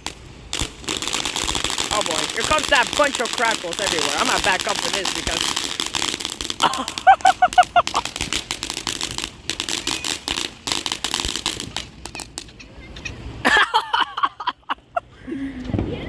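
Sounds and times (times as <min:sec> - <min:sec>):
firework crackling and popping: 0:00.0 - 0:12.6.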